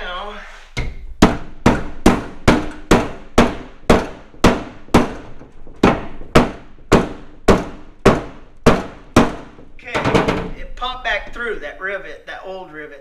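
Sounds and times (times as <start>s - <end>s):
hammer blows on aluminum hull: 0.8s - 10.6s.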